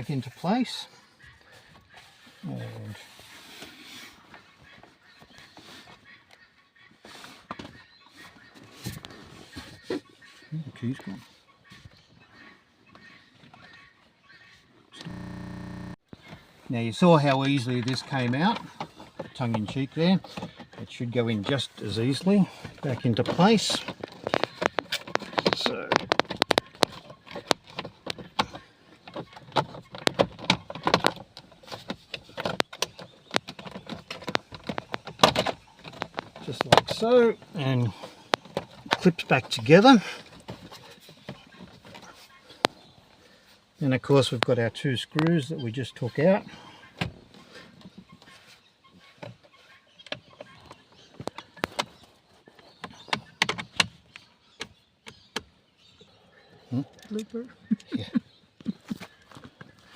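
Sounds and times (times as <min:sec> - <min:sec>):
hard plastic clicks and rattles: 0:15.0 - 0:16.0
plastic covers clicking and tapping: 0:23.2 - 0:37.0.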